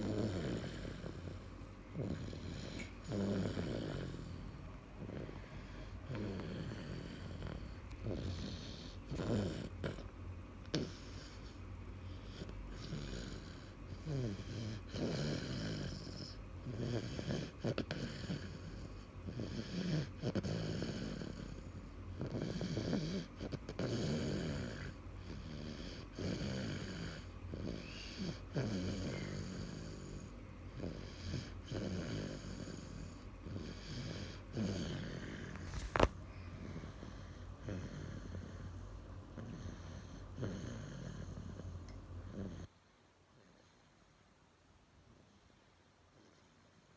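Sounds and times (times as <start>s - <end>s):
baby snoring: 0.0s - 42.7s.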